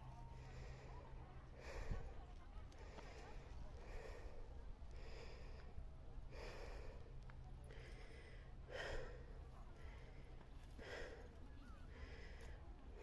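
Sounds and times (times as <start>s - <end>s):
person breathing hard: 7.8s - 9.3s.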